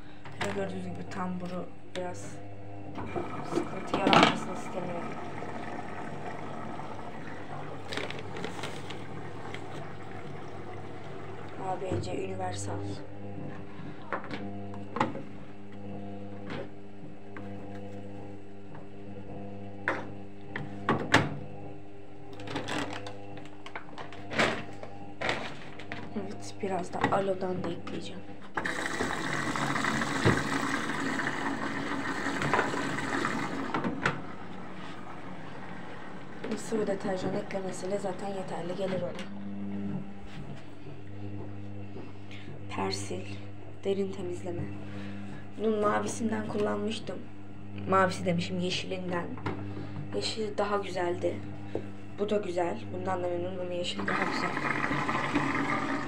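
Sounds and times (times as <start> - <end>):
low motor hum: 0.0 - 56.0
laundry sloshing in washing machine: 3.0 - 12.6, 22.4 - 27.5, 28.6 - 39.1, 54.0 - 56.0.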